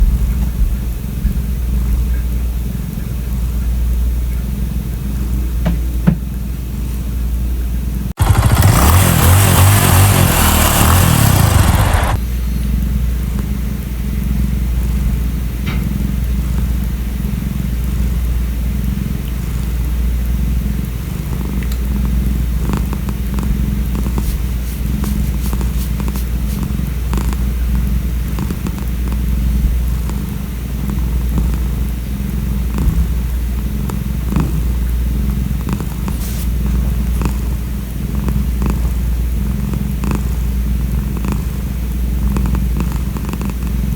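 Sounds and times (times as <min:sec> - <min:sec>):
cat purring loudly: 0:08.2 - 0:43.9
faint clicks: 0:20.8 - 0:24.2.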